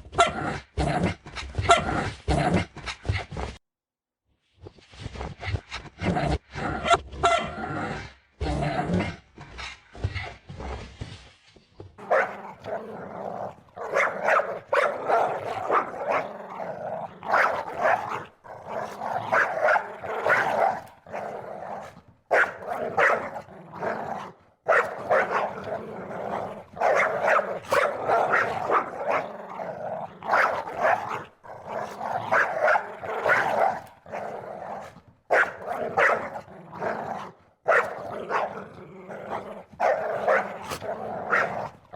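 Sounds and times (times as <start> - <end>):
dog barking: 12.0 - 41.8.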